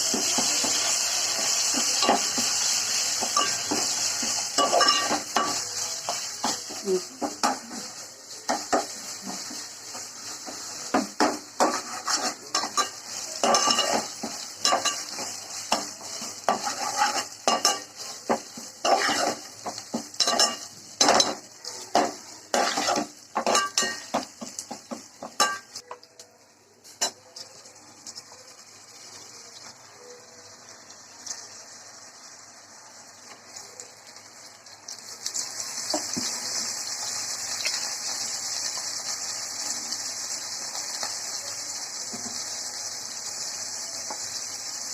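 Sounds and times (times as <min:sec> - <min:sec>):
food sizzling in oil: 0:00.0 - 0:25.8, 0:26.7 - 0:44.9
metal spoon scraping pan: 0:11.6 - 0:15.2, 0:16.0 - 0:18.0, 0:22.5 - 0:24.1.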